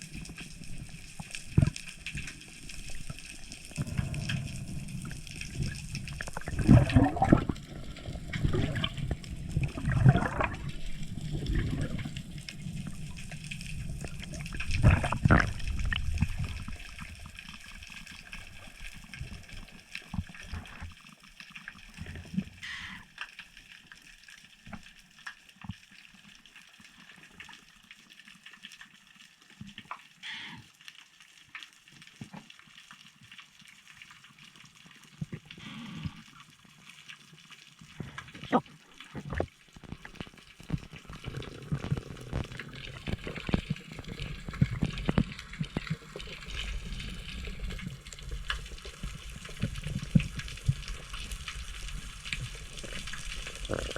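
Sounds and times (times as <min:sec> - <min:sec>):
water sloshing and gurgling: 0:00.0 - 0:23.7, 0:32.0 - 0:53.9
underwater hush: 0:02.7 - 0:17.1, 0:22.6 - 0:23.1, 0:30.2 - 0:30.7.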